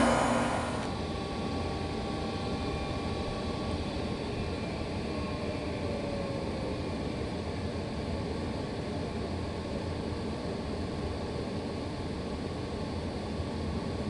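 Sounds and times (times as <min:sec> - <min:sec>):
faint tone gliding downward: 0:00.0 - 0:00.9
hvac equipment hum and whoosh: 0:00.0 - 0:05.0.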